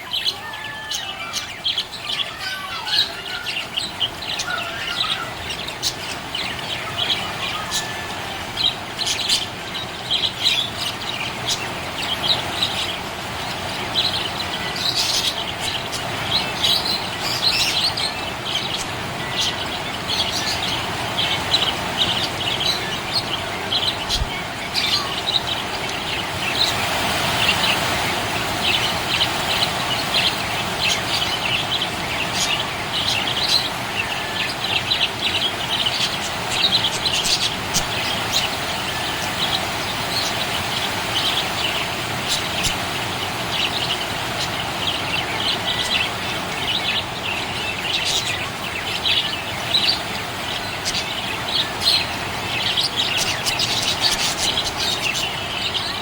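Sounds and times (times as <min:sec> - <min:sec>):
budgerigar chirping and warbling: 0:00.0 - 0:09.5.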